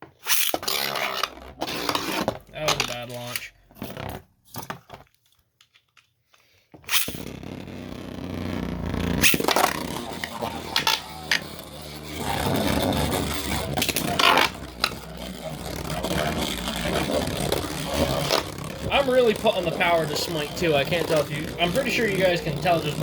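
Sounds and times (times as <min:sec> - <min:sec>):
spinning tops launched into stadium: 0:00.2 - 0:03.0, 0:06.9 - 0:23.0
spinning tops scraping and clashing: 0:00.2 - 0:03.5, 0:06.9 - 0:07.3, 0:08.3 - 0:23.0
sharp hits of spinning tops: 0:06.9 - 0:07.4, 0:09.2 - 0:23.0.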